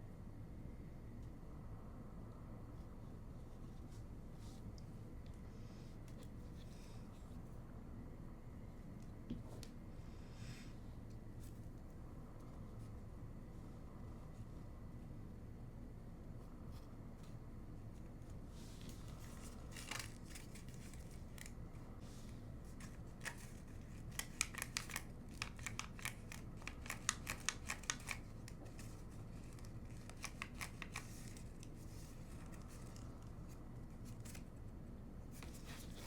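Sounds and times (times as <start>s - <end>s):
faint low hum: 0.0s - 36.0s
paper crackling: 18.4s - 34.6s.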